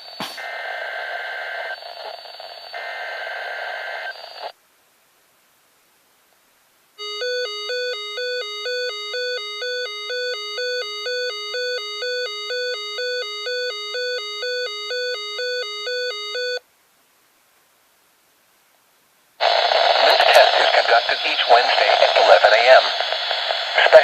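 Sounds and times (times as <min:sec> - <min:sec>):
weather radio alert tone: 0:19.4 - 0:24.0.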